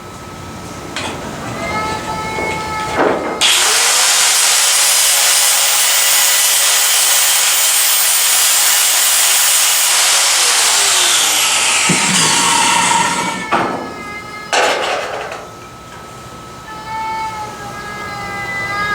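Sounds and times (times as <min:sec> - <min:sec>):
electric grinder grinding steel: 0:03.4 - 0:14.0.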